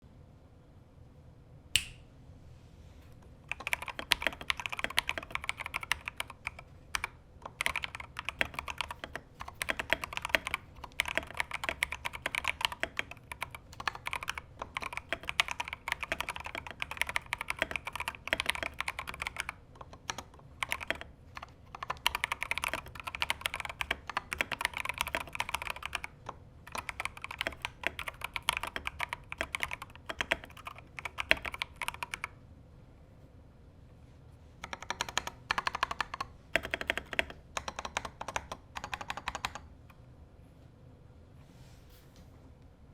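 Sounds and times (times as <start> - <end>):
mechanical keyboard typing: 3.5 - 32.4, 34.6 - 39.7.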